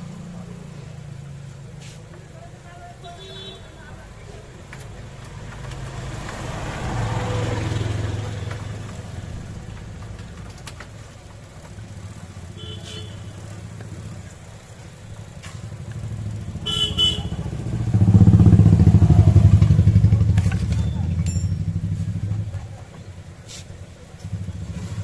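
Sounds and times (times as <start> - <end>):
traffic engine rumble: 0.0 - 25.0
engine passing loudly: 5.2 - 10.5, 15.4 - 22.8
short horn toots: 12.6 - 13.4, 16.6 - 17.4.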